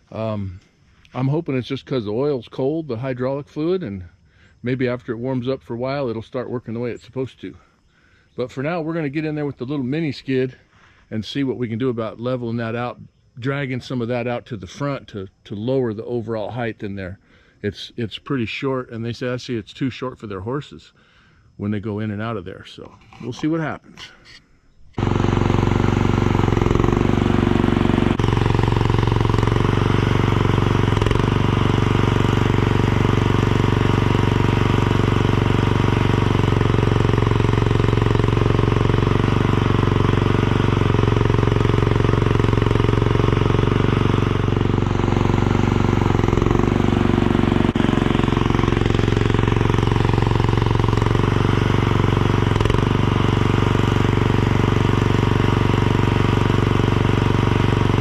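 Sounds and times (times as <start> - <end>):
skid steer engine running: 25.0 - 58.0.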